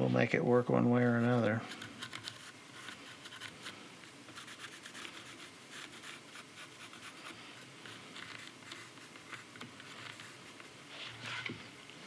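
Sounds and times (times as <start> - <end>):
scratching and rubbing on wood: 1.6 - 11.5.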